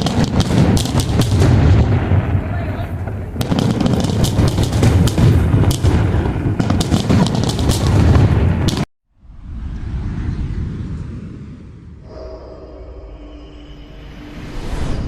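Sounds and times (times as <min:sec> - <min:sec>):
fireworks bangs and crackles: 0:00.0 - 0:08.9.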